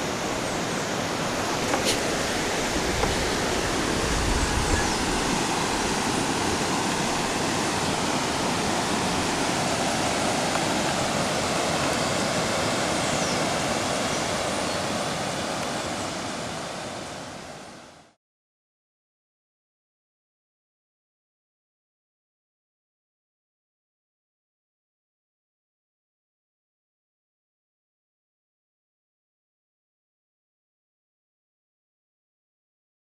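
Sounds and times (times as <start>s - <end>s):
river water rushing: 0.0s - 18.1s.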